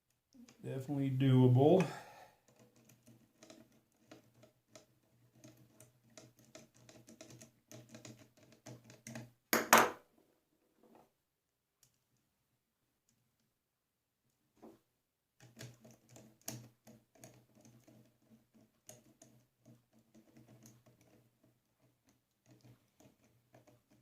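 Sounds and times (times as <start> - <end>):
small clicks of nuts and bolts: 2.4 - 9.3, 15.4 - 24.0.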